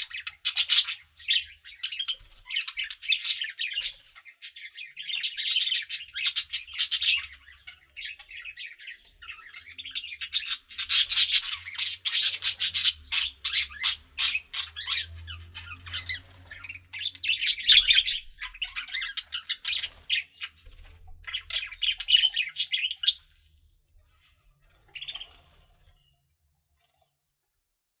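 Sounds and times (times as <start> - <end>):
parakeets chattering and warbling: 0.0 - 26.2.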